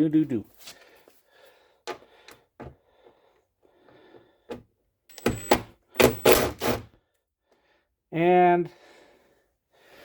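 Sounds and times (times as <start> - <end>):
impact driver hammering screws: 5.1 - 6.9.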